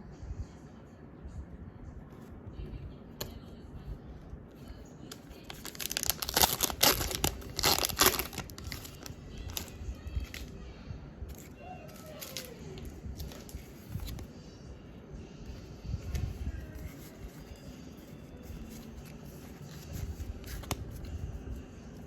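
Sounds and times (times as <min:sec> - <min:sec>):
foil wrapper tearing and crinkling: 0:05.4 - 0:10.5, 0:12.0 - 0:12.6.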